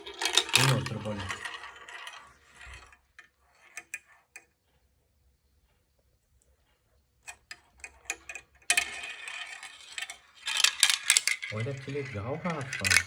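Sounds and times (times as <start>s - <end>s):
marble rattling along track: 0.0s - 4.4s, 7.3s - 13.0s
marble clicking on marble run: 0.0s - 4.5s, 7.3s - 13.0s.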